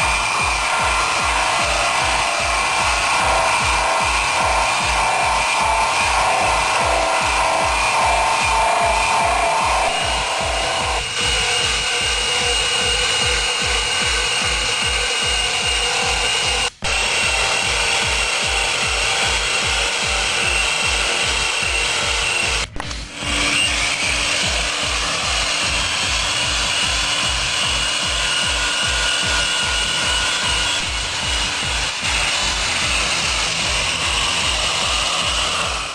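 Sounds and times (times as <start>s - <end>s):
angle grinder whining and rasping: 0.0s - 35.9s
background music with beat: 0.0s - 35.9s.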